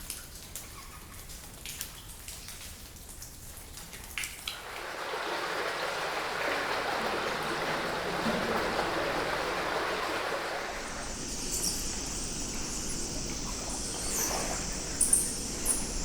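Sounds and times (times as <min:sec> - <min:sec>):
stream flowing: 0:04.5 - 0:16.0.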